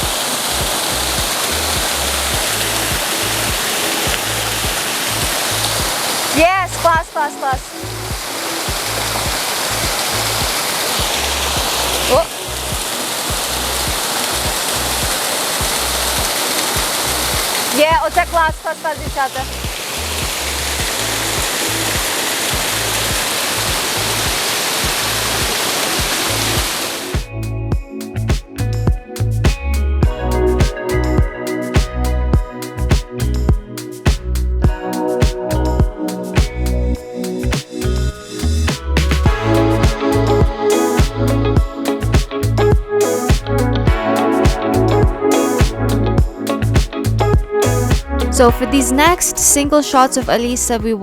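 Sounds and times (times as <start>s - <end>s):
waterfall rushing: 0.0s - 27.3s, 38.4s - 48.0s
background music with bass: 0.0s - 51.0s.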